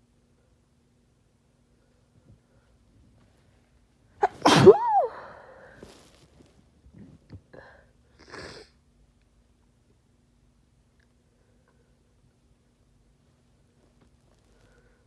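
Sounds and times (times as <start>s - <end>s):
woman sneezing harshly: 4.2s - 6.0s.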